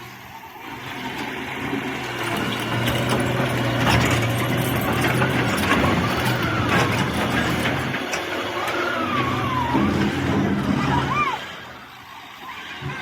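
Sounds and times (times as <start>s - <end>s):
heavy vehicle engine running: 0.0s - 13.0s
knocks and clatter: 2.0s - 11.1s.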